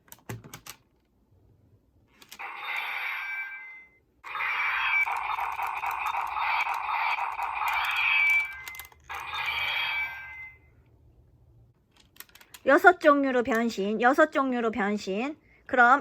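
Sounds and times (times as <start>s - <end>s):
toy sword electronic sound effects: 2.4s - 3.6s, 4.2s - 10.6s.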